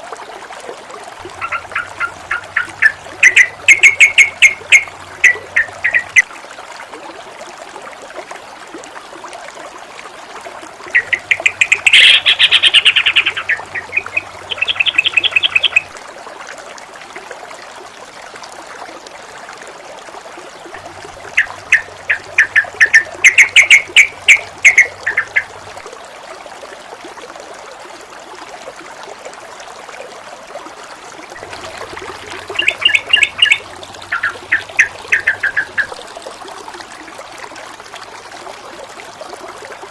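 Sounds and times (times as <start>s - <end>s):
flowing water: 0.0s - 39.9s
bird chattering: 1.4s - 6.2s, 10.9s - 15.9s, 21.4s - 25.5s, 32.5s - 35.9s.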